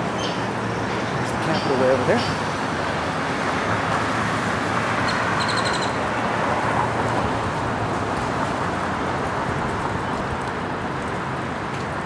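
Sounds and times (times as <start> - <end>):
road traffic noise: 0.0 - 12.0
high bird chirps: 5.1 - 6.0.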